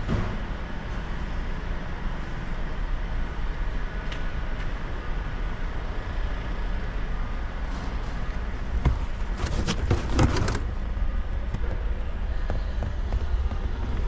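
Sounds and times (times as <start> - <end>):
low mechanical rumble: 0.0 - 14.0.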